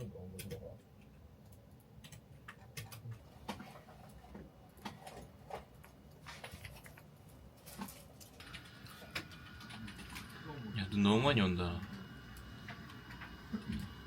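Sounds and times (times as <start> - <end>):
keyboard and mouse clicking: 0.3 - 3.2.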